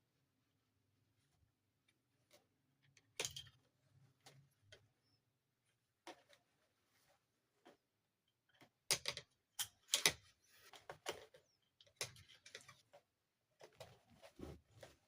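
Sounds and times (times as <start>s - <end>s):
plastic toy parts clicking: 8.5s - 10.3s.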